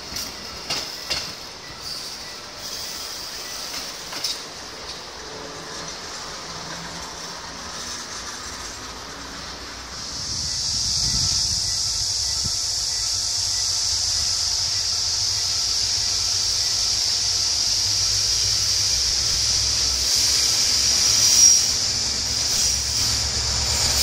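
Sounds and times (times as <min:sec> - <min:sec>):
train wheels knocking over rail joints: 0:00.0 - 0:01.8, 0:03.5 - 0:09.4
high hiss: 0:00.0 - 0:24.0.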